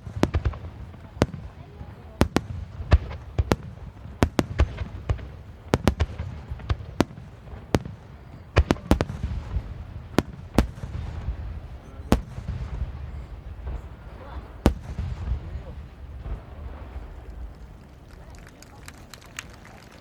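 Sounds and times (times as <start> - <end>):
low rumble of echoing booms: 0.0 - 17.6
fireworks bursting: 0.0 - 18.3.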